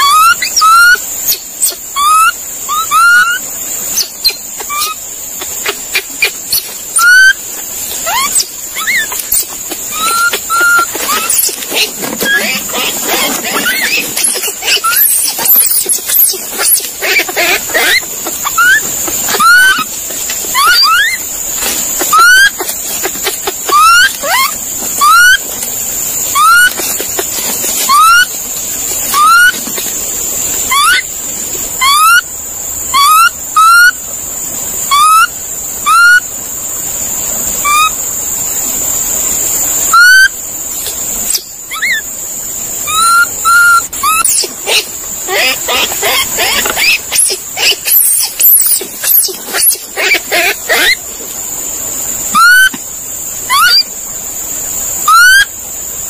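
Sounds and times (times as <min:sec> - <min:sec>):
monkey whistled cries: 0:00.0 - 0:21.3, 0:22.0 - 0:25.4, 0:26.3 - 0:28.4, 0:29.1 - 0:29.6, 0:30.7 - 0:31.1, 0:31.8 - 0:32.3, 0:32.9 - 0:34.0, 0:34.9 - 0:36.3, 0:37.6 - 0:38.0, 0:39.9 - 0:40.4, 0:41.3 - 0:42.1, 0:42.9 - 0:51.0, 0:52.3 - 0:52.8, 0:53.5 - 0:53.9, 0:55.0 - 0:55.6.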